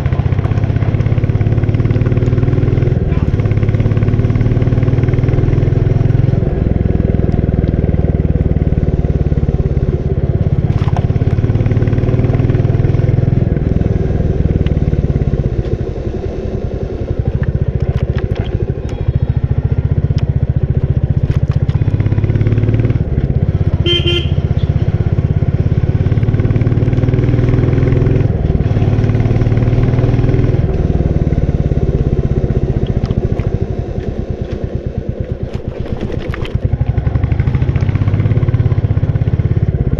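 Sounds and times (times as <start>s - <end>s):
motorcycle engine running: 0.0s - 39.9s
horn honk: 23.6s - 25.1s.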